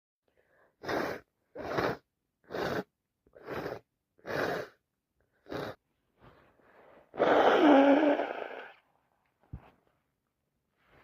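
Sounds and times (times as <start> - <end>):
congested nose sniffing: 0.8 - 4.8, 5.4 - 5.8.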